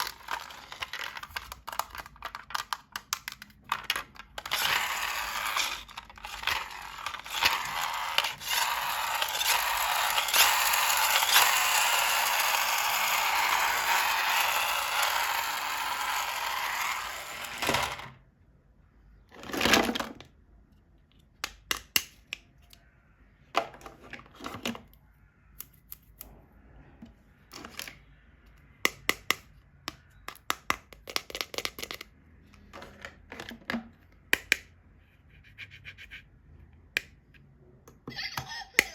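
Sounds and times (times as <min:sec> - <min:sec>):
plastic toy parts clicking: 0:00.0 - 0:18.2, 0:28.9 - 0:32.1.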